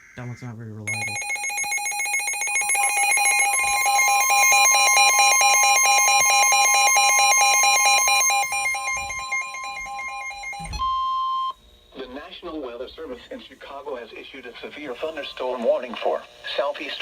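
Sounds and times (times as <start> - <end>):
rapid pulsing alarm beep: 0.9 - 12.3
steady warning tone: 0.9 - 17.0.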